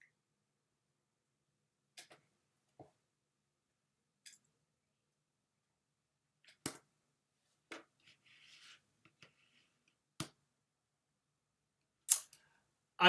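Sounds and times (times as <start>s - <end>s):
soft rustle: 7.4s - 9.9s.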